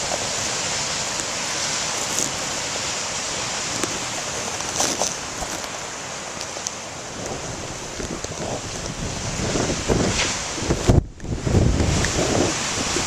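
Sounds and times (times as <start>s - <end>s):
surf breaking on shore: 0.0s - 13.0s
wind noise on microphone: 7.1s - 13.0s.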